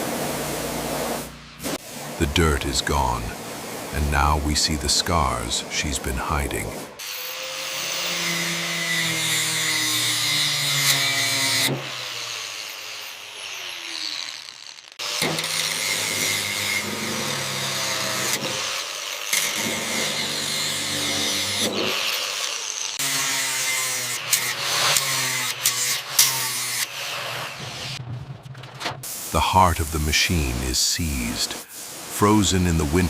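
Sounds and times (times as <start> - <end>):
power tool whirring: 7.0 - 28.0.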